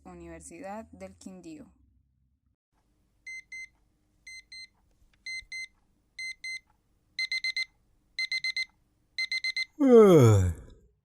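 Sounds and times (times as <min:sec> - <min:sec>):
digital alarm clock beeping: 0:03.3 - 0:03.7, 0:04.3 - 0:04.7, 0:05.3 - 0:06.6, 0:07.2 - 0:09.7.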